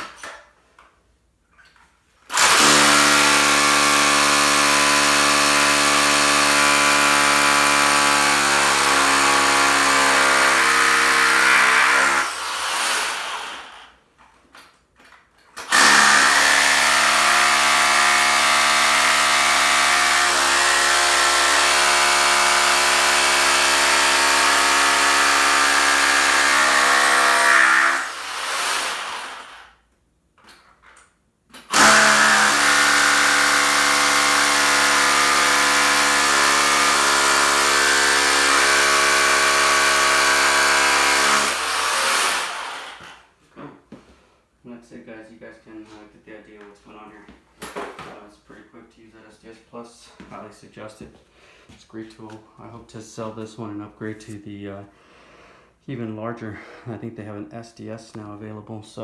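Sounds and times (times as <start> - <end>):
rotary hammer drilling into concrete: 2.3 - 13.9, 15.6 - 29.7, 31.6 - 43.2.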